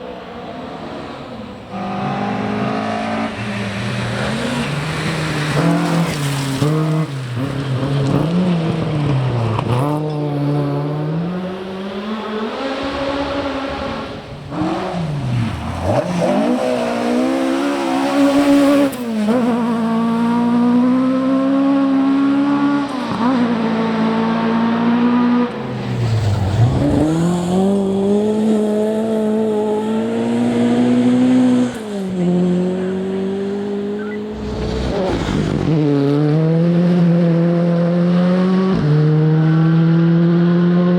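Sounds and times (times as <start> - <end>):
rally car engine revving: 0.4 - 40.9.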